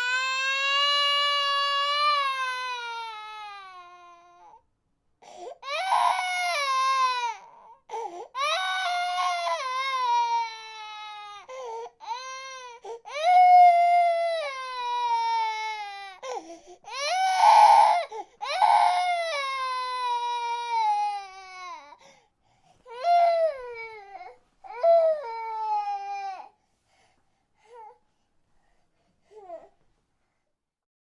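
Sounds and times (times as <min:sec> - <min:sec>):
infant crying: 0:00.0 - 0:04.6, 0:05.2 - 0:22.0, 0:22.9 - 0:26.5
infant gasping for breath: 0:05.2 - 0:05.6, 0:07.9 - 0:08.4, 0:11.5 - 0:12.0, 0:16.2 - 0:16.9, 0:22.0 - 0:22.9, 0:26.6 - 0:29.8.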